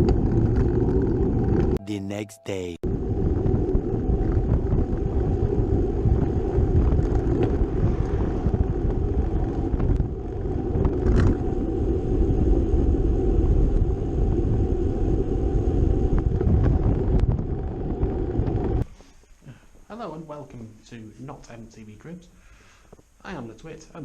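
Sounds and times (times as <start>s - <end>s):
wind noise on microphone: 2.9s - 18.8s
road noise: 5.1s - 11.7s.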